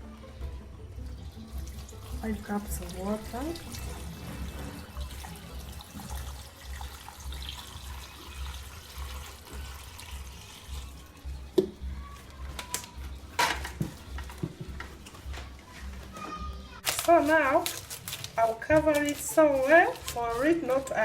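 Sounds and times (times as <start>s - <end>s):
water pouring into a saucepan: 0.9s - 12.2s.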